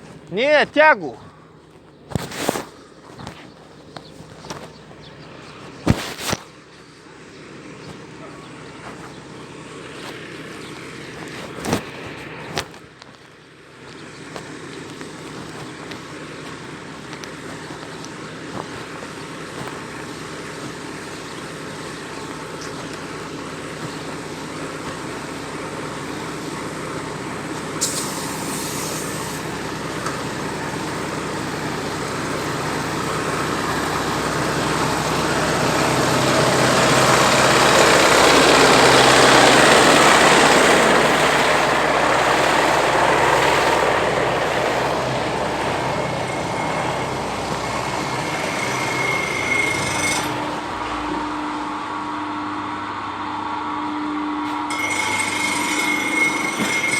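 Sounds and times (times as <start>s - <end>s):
vehicle engine running: 0.0s - 56.9s
short hiss: 27.8s - 29.5s.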